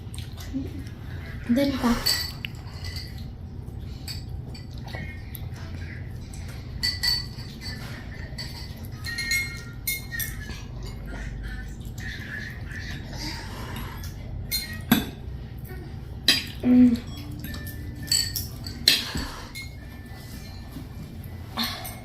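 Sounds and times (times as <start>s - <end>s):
low steady background hum: 0.0s - 22.0s
cutlery clinking on plates: 1.8s - 5.2s, 6.3s - 11.4s, 16.2s - 22.0s.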